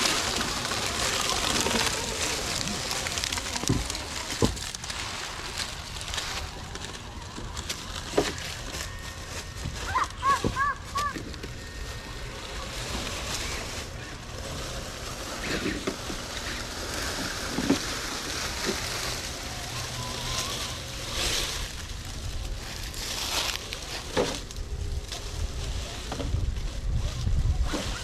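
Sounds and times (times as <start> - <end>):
wind buffeting microphone: 24.5 - 28.0.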